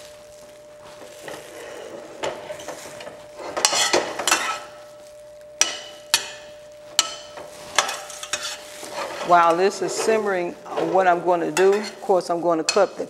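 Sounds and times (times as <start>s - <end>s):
light sizzle: 0.0s - 13.0s
utensil scraping hot pan: 0.0s - 13.0s
utensil tapping on pan: 5.6s - 8.6s.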